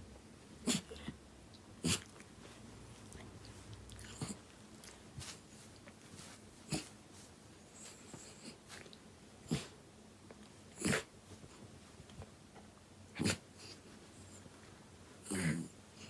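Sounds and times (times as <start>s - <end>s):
dog sneezing: 0.6s - 1.0s, 1.8s - 2.1s, 13.2s - 13.4s.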